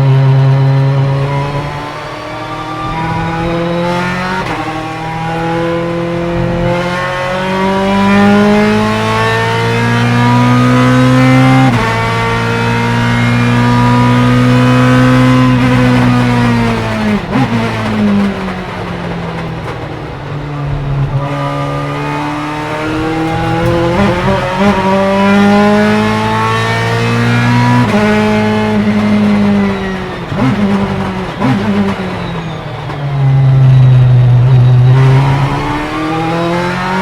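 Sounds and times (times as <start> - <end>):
racing engine accelerating hard: 0.0 - 37.0.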